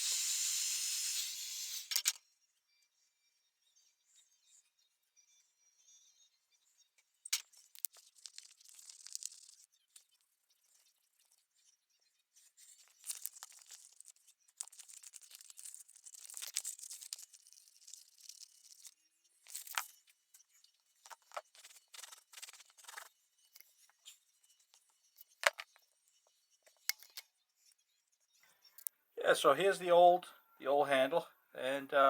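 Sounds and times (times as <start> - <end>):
light material rustling and tearing: 7.6 - 9.7, 12.7 - 20.0.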